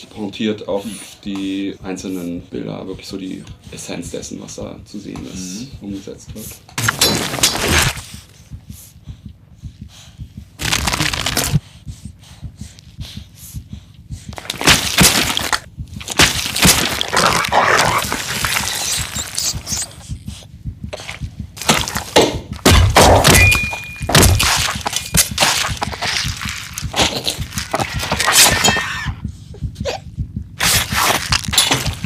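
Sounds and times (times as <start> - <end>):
sharp cracks breaks and thuds: 6.8 - 8.0, 14.4 - 19.4, 21.6 - 28.9, 30.6 - 32.0.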